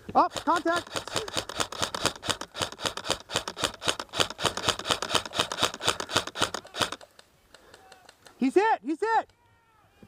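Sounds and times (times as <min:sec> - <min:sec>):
electric rifle firing rapid shots: 0:00.3 - 0:07.1.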